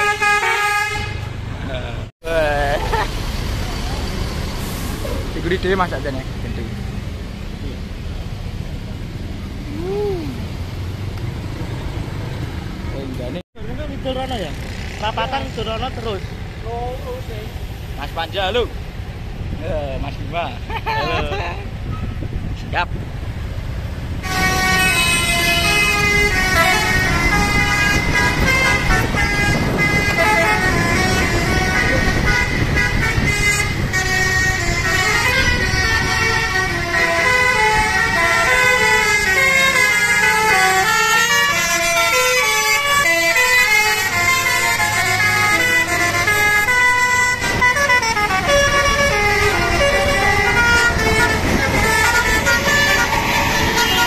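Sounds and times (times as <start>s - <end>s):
bus air horn playing a tune: 0.0s - 1.3s, 24.2s - 54.0s
low rumble of bus: 0.0s - 54.0s.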